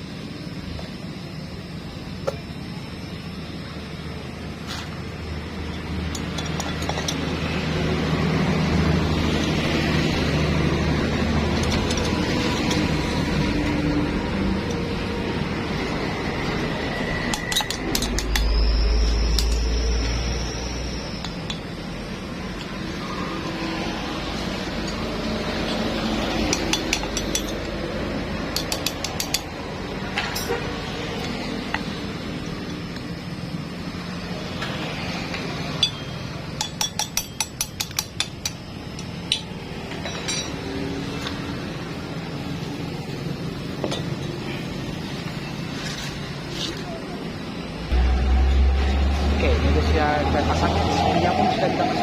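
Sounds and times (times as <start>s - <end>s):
steady background hum: 0.0s - 50.7s
loud low hum with high whine: 0.0s - 52.0s
metal tools clinking: 5.6s - 7.4s, 17.3s - 19.8s, 26.5s - 27.7s, 30.2s - 31.4s, 35.8s - 38.0s, 39.3s - 41.4s
metallic clinks of tools: 26.5s - 27.7s, 35.8s - 40.7s
sharp metallic clicks: 28.5s - 29.6s.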